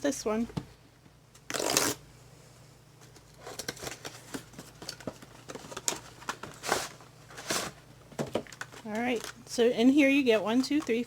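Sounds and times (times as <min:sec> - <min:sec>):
packaging tearing: 0:01.5 - 0:02.0
packaging rustling: 0:03.2 - 0:09.4.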